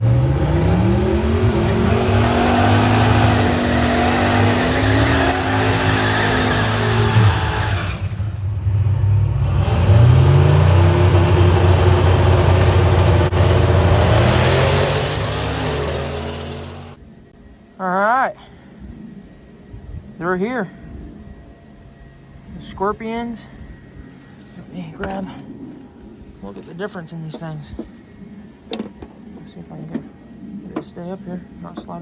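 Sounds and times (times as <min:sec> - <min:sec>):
car engine accelerating hard: 0:00.0 - 0:17.0.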